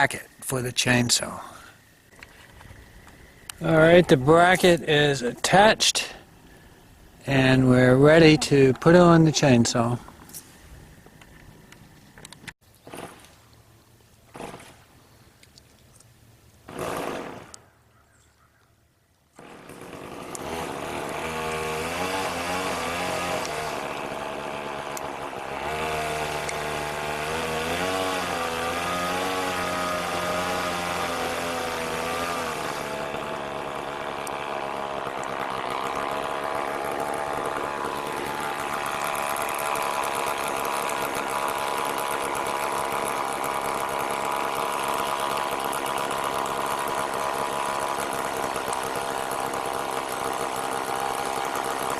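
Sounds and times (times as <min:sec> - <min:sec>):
chainsaw engine revving: 0:03.4 - 0:10.1, 0:14.3 - 0:14.8, 0:16.7 - 0:17.6, 0:19.4 - 0:51.9.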